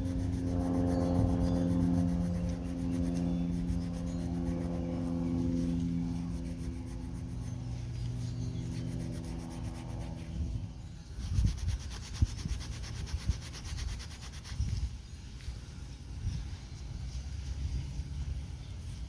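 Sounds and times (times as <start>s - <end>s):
rubbing or scraping strokes: 0.0s - 14.9s
steady humming tone: 0.0s - 19.0s.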